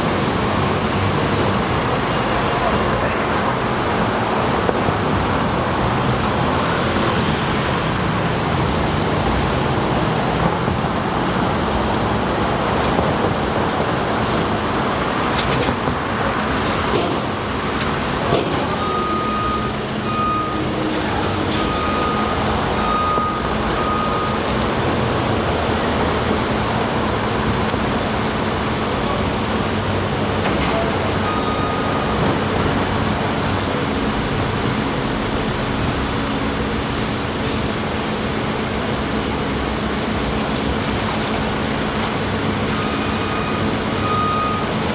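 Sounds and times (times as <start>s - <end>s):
heavy vehicle traffic noise: 0.0s - 44.9s
backup alarm beeping: 18.6s - 25.0s, 30.9s - 33.1s, 41.9s - 44.8s.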